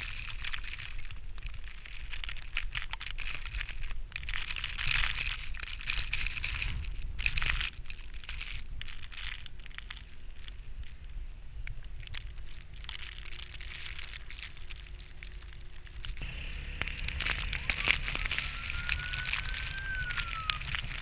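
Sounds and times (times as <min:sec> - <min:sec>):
wind rumble on microphone: 0:00.0 - 0:21.0
footsteps crunching through snow: 0:13.5 - 0:21.0.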